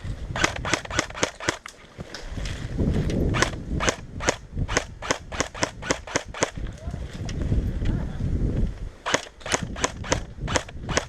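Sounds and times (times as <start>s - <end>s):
airsoft guns firing: 0.4s - 1.6s, 3.4s - 6.6s, 9.0s - 11.0s.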